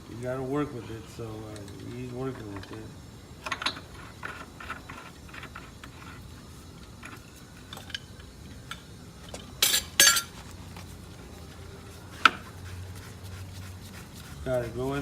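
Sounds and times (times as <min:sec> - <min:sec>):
sharp ringing clink: 0:09.6 - 0:10.3
metal clanks: 0:09.6 - 0:10.4
wrench clinking on metal: 0:09.6 - 0:10.4.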